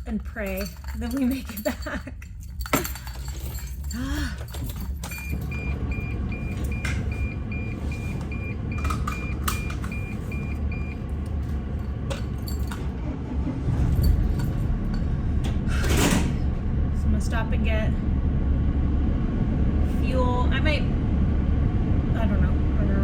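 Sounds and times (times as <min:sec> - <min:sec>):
keys rattling: 0:00.0 - 0:05.7, 0:08.7 - 0:12.9, 0:13.8 - 0:15.1
van engine idling: 0:02.6 - 0:23.0
dashboard warning chime beeps: 0:05.0 - 0:11.2.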